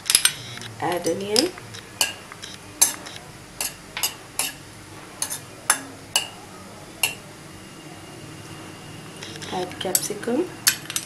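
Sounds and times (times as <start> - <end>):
onion sizzling in hot oil: 3.6 - 6.4.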